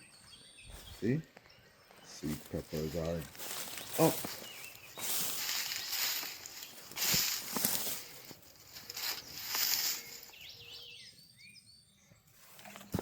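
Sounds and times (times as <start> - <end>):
rustling: 2.2 - 10.6.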